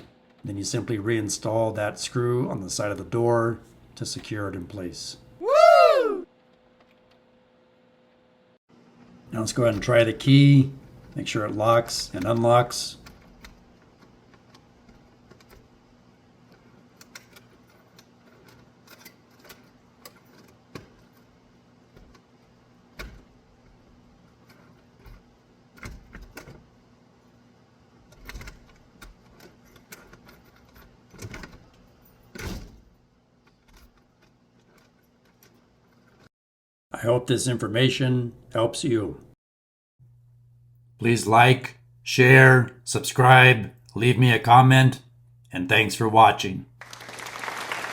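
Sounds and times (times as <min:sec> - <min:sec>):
key working in door lock: 0:11.0 - 0:22.3, 0:22.9 - 0:26.8, 0:28.0 - 0:36.3
faint steady hum: 0:40.0 - 0:47.9.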